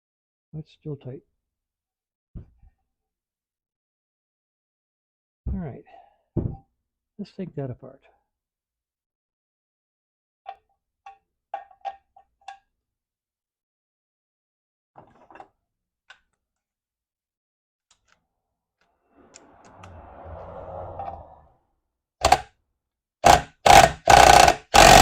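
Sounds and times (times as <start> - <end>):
loud rasping noise: 23.2 - 25.0.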